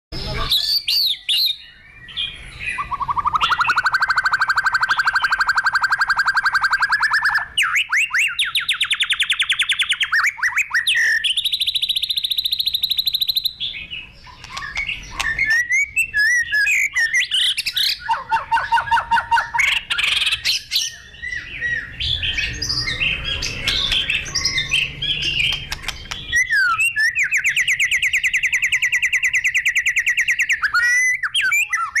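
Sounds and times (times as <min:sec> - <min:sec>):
bird singing fast trills: 0:00.2 - 0:32.0
bird whistles and chatter: 0:00.2 - 0:32.0.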